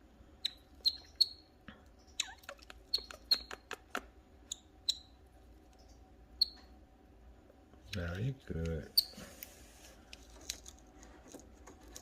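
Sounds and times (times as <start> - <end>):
canary chirping: 0.4 - 6.8, 8.9 - 9.2.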